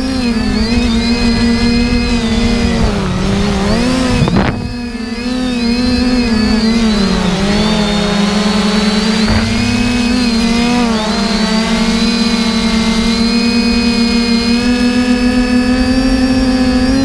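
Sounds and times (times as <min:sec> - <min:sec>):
drone propellers humming: 0:00.0 - 0:17.0.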